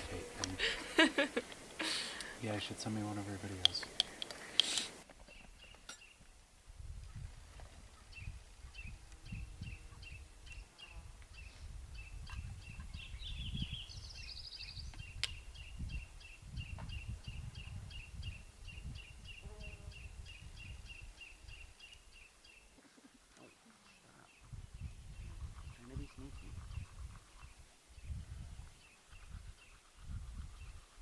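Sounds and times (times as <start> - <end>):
low wind rumble: 6.6 - 21.7, 24.4 - 30.9.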